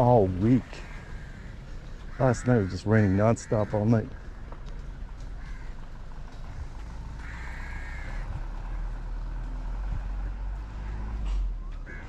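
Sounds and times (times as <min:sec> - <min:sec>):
low outdoor rumble: 0:00.0 - 0:12.0
crow cawing: 0:00.6 - 0:04.6, 0:05.3 - 0:09.1.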